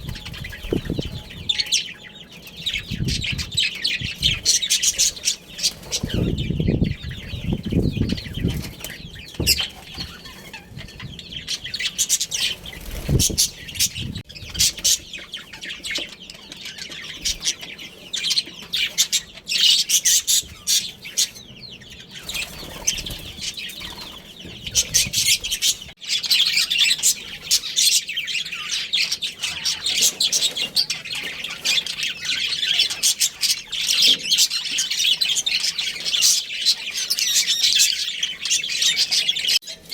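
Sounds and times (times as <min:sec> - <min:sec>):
budgerigars chirping: 0:00.0 - 0:39.6
wings flapping: 0:12.3 - 0:14.2.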